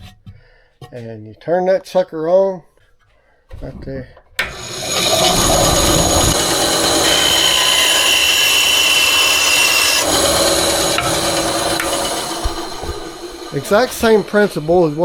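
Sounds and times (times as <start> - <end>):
bandsaw whirring: 4.4 - 15.0.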